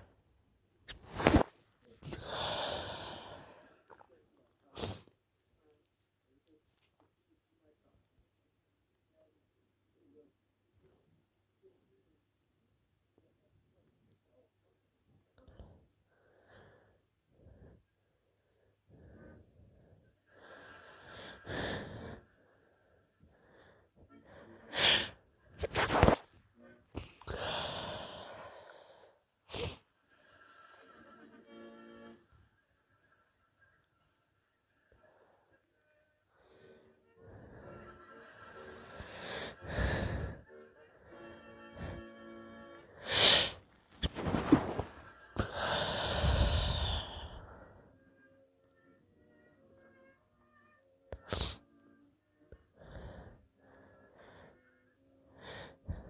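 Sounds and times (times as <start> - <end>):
woman sniffling and breathing: 29.4 - 29.9, 43.0 - 47.6.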